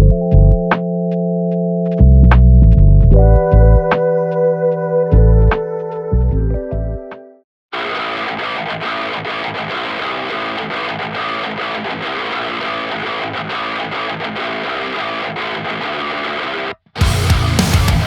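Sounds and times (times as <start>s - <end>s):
distorted electric guitar: 7.7s - 18.0s
guitar-led background music: 7.8s - 18.0s.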